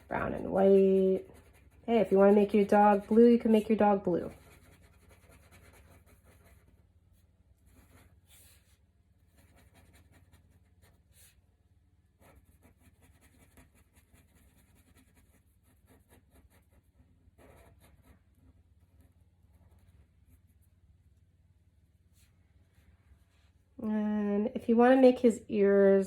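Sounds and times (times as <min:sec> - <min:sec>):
drawing tool scratching on paper: 0:00.0 - 0:06.8, 0:07.6 - 0:11.4, 0:12.2 - 0:20.6
steady low hum: 0:00.0 - 0:26.0.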